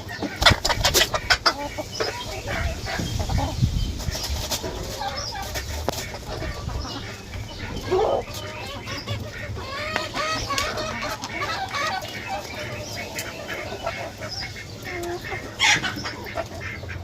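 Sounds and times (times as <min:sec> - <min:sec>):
chickens clucking and calling: 0:00.0 - 0:17.0.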